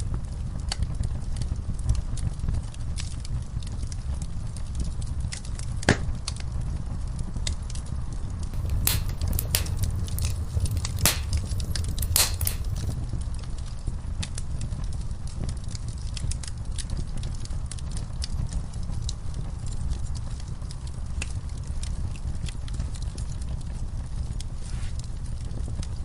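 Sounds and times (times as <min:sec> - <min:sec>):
low rumble of flames: 0:08.3 - 0:26.0
fire crackling and popping: 0:08.6 - 0:13.0.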